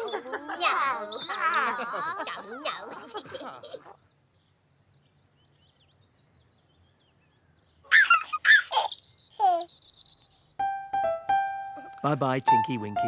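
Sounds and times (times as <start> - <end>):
bird-like chirps and whistles: 7.8 - 10.7.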